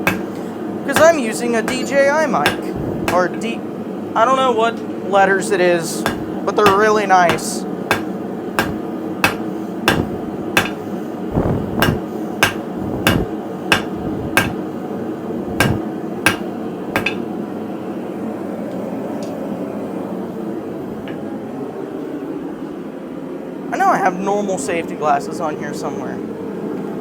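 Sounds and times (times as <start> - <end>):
hammer striking steel on anvil: 0.0 - 3.4, 6.0 - 11.0, 11.8 - 14.7, 15.6 - 17.3
steady background noise: 0.0 - 27.0.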